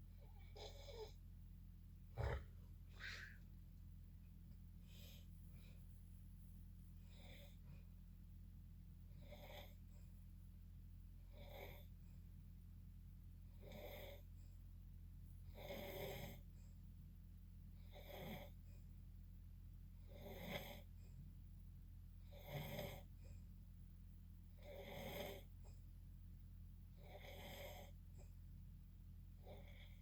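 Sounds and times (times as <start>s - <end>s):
steady low hum: 0.0s - 30.0s
person snoring: 2.2s - 3.4s.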